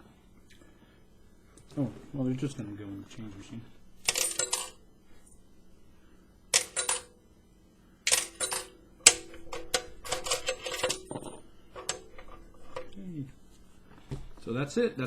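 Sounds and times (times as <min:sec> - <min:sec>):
coins clattering into metal box: 0:04.0 - 0:04.8, 0:06.6 - 0:07.2, 0:08.1 - 0:13.0.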